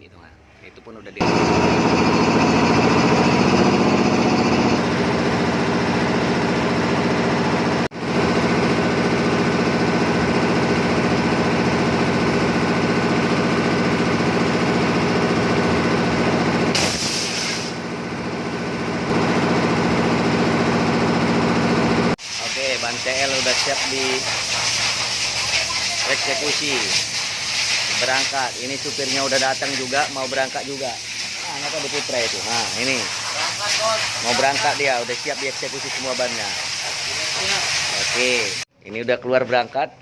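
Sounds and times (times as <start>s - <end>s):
pneumatic impact wrench rattling: 16.6s - 19.4s, 22.2s - 38.6s
air hiss: 16.8s - 17.8s, 22.2s - 38.6s.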